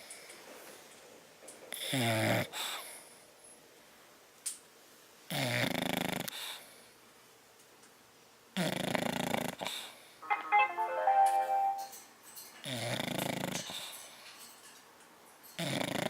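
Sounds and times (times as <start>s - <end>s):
dog snoring: 1.8s - 2.8s, 5.3s - 6.6s, 8.6s - 9.7s, 12.6s - 13.6s, 15.6s - 16.0s
musical notes stepping down: 10.2s - 12.0s.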